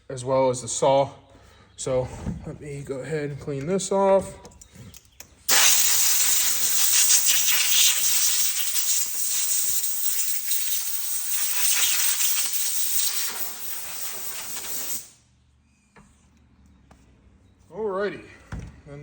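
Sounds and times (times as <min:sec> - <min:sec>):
compressed air hissing from blow gun: 0:05.5 - 0:15.2.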